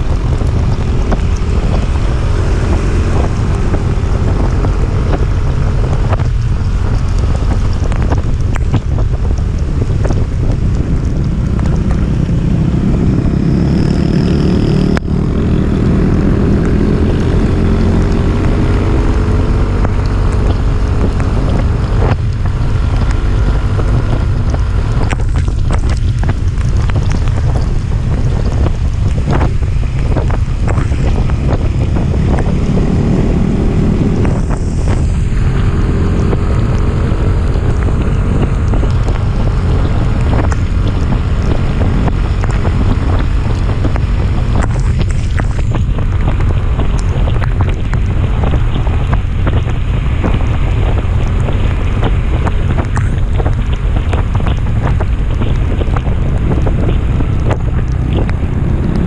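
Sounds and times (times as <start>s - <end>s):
motorcycle engine running: 0.0s - 59.0s
wind buffeting microphone: 0.0s - 59.0s.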